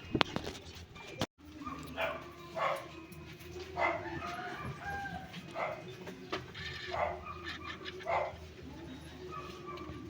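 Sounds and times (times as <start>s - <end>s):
dog barking: 1.6s - 2.9s, 3.8s - 5.9s, 6.9s - 8.4s, 9.2s - 10.0s.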